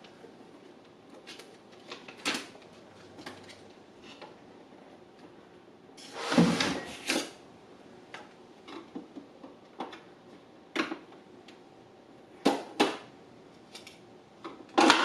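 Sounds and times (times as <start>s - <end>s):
plastic parts rustling and clattering: 13.7s - 15.0s.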